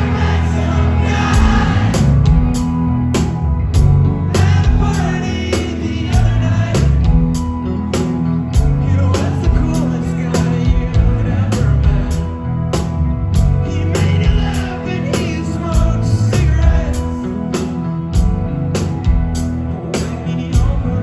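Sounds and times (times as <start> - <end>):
steady drum beat: 0.0 - 5.0
live rock band playing: 0.0 - 21.0.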